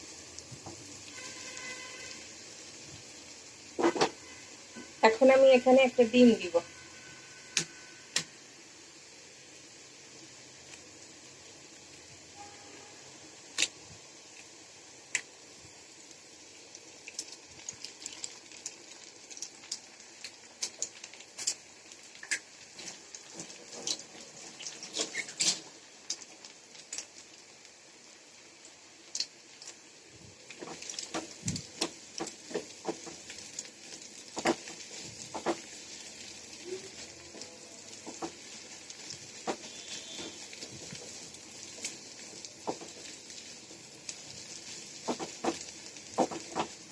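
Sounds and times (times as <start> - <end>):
food sizzling in oil: 0.0 - 46.9
spatula scraping and knocking pan: 3.8 - 4.2, 30.6 - 33.4, 34.3 - 35.8, 38.0 - 38.7, 44.6 - 46.8.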